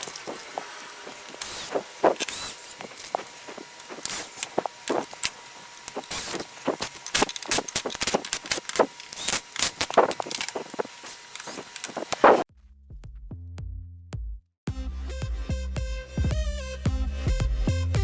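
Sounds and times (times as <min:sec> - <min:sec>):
small metal parts clinking: 0:00.0 - 0:12.2.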